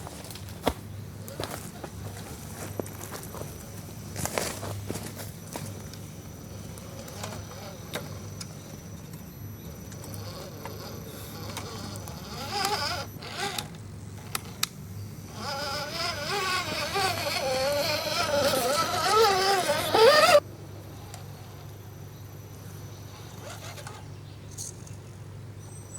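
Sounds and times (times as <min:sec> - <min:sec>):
small electric motor whining: 0:05.5 - 0:21.8, 0:23.0 - 0:24.1.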